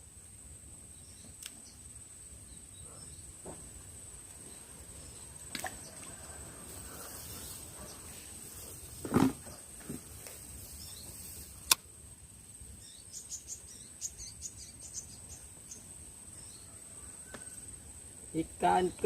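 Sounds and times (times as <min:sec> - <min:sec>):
insects droning: 0:00.0 - 0:19.0
sharp click: 0:11.6 - 0:11.9.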